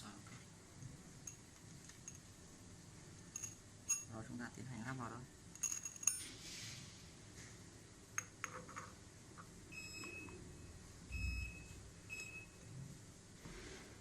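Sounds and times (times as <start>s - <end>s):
metallic clinks: 1.2s - 2.3s, 3.3s - 4.2s, 5.5s - 6.3s.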